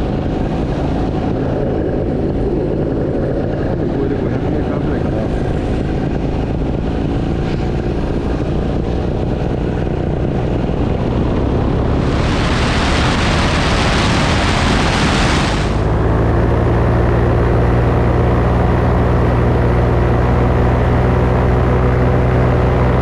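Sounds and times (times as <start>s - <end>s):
paramotor engine and propeller: 0.0s - 23.0s
loud rushing hiss: 11.9s - 15.9s.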